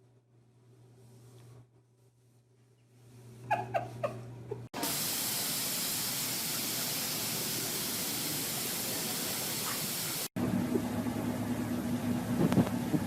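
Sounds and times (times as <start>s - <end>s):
loud hissing noise: 4.8s - 10.3s.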